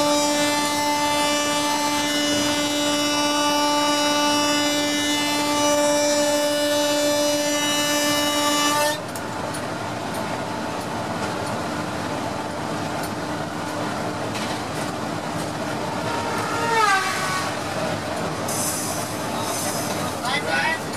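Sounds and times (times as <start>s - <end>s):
locomotive horn blast: 0.0s - 9.1s, 15.8s - 17.8s
train rumbling at speed: 0.0s - 20.9s.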